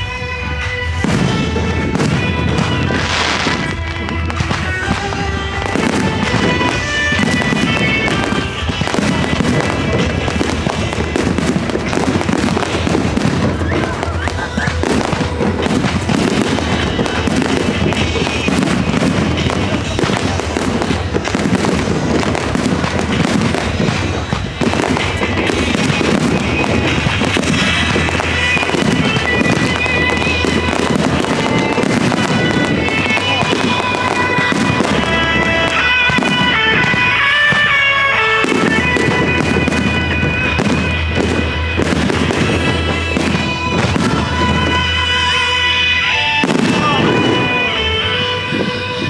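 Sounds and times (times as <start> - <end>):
fireworks crackling and banging: 0.0 - 49.0
loud background music: 0.0 - 49.0.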